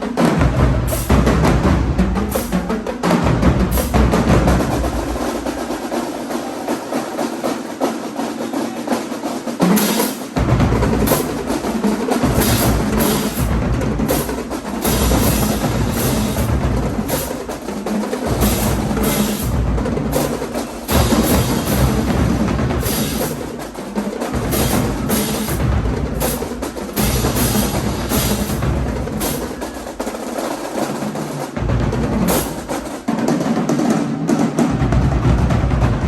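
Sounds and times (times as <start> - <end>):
bass drums: 0.0 - 5.5, 10.4 - 29.6, 31.6 - 32.7
snare drums: 0.0 - 36.0.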